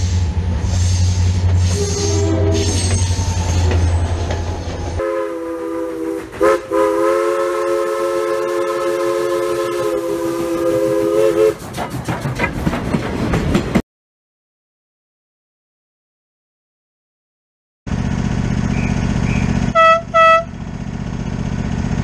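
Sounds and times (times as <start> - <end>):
train rumbling on track: 0.0 - 13.8, 17.9 - 22.0
steam locomotive chime whistle: 1.7 - 4.1, 5.0 - 11.6, 18.8 - 20.5.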